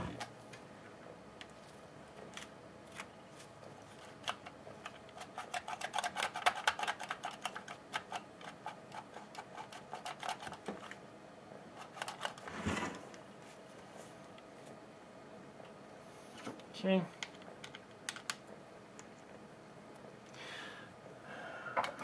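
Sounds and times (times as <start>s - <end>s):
short scrape: 12.5s - 13.1s
small clicks and taps of parts: 16.5s - 19.2s.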